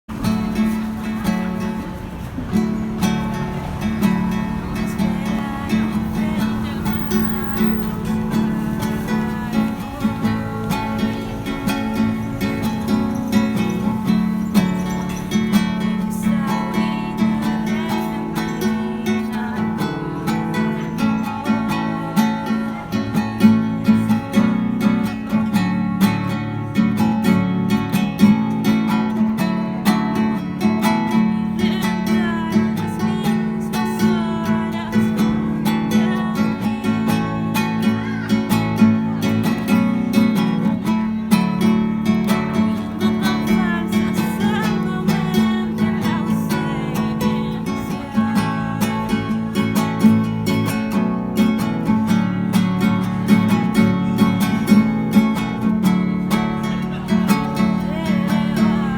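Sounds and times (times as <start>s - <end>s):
acoustic guitar strumming: 0.1s - 58.9s.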